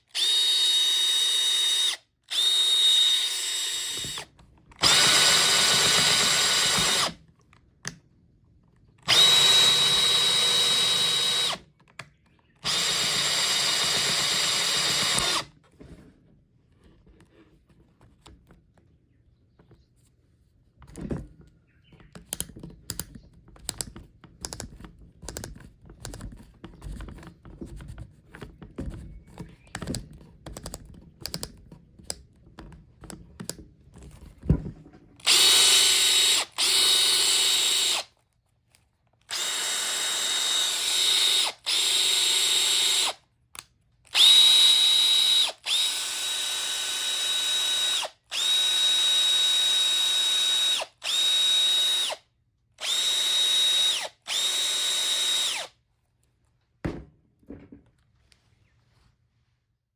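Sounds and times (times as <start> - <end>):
cordless drill whining: 0.1 - 7.2, 9.0 - 11.7, 12.5 - 15.5, 35.2 - 38.1, 39.2 - 43.2, 44.1 - 55.8.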